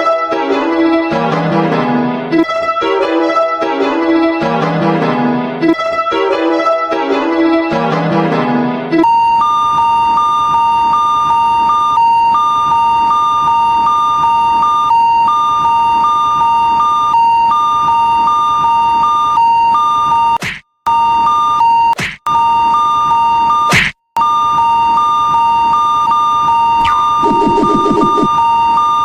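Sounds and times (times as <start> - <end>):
level crossing alarm beeping: 26.8 - 29.0.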